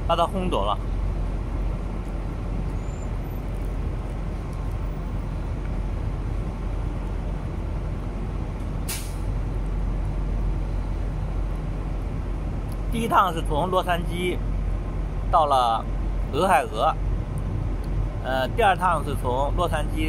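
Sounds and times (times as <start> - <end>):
diesel truck engines idling: 0.0 - 20.0
air brake hiss: 8.8 - 9.3.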